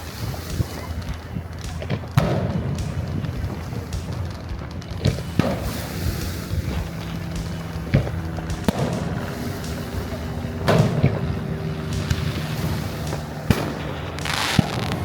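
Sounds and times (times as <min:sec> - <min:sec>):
crowd and street noise: 0:00.0 - 0:15.0
fireworks bangs: 0:00.0 - 0:15.0.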